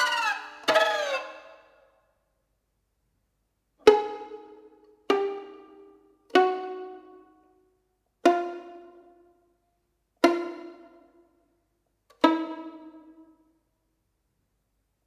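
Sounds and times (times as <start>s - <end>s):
violin pizzicato notes: 0.0s - 1.8s, 3.8s - 7.6s, 8.2s - 9.4s, 10.2s - 11.3s, 12.1s - 13.4s.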